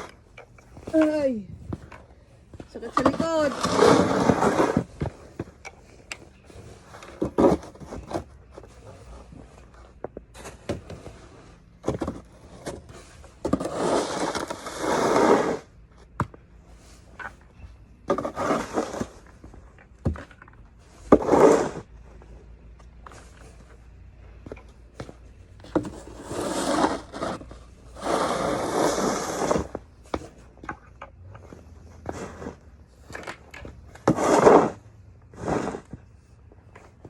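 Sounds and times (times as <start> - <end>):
snow shovel scraping ground: 0.0 - 1.7, 2.6 - 5.4, 6.5 - 15.7, 18.0 - 20.2, 20.8 - 22.2, 25.0 - 30.6, 31.2 - 36.1.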